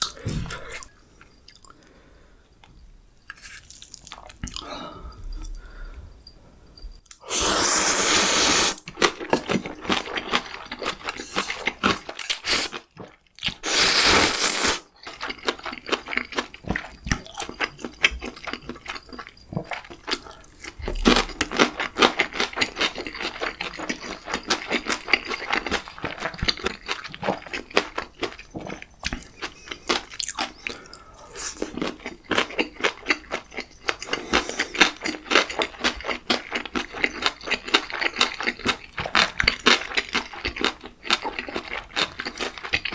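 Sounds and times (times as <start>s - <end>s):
loud slurps: 7.2s - 8.8s, 13.6s - 14.8s
wet chewing with mouth clicks: 14.5s - 42.9s.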